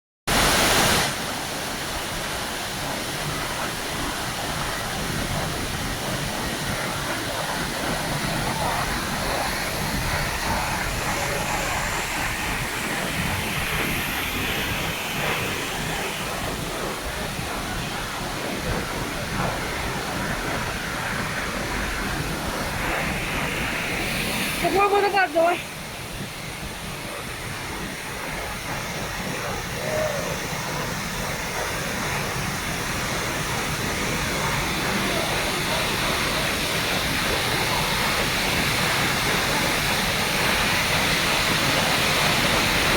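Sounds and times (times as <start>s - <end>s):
waterfall rushing: 0.3s - 42.9s.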